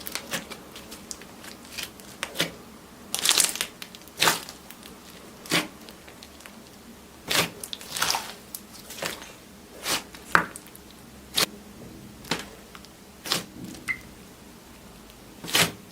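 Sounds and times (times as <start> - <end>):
slime squishing and crackling: 0.0 - 11.5, 15.4 - 15.9.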